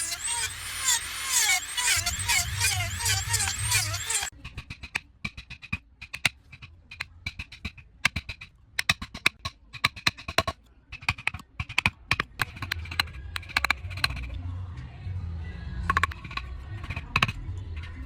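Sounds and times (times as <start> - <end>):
low hum: 0.0 - 4.3
rapid clicking and tapping: 2.0 - 14.3.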